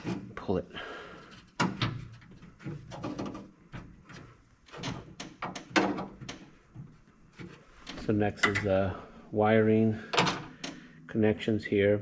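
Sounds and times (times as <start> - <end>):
metal latch parts clicking: 7.9 - 8.8, 10.1 - 10.8.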